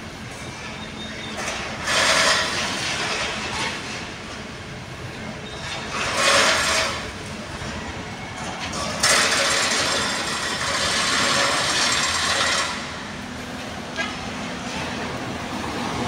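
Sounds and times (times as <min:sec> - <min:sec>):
roadside traffic noise: 0:00.0 - 0:16.0
vehicles passing close by: 0:08.4 - 0:16.0.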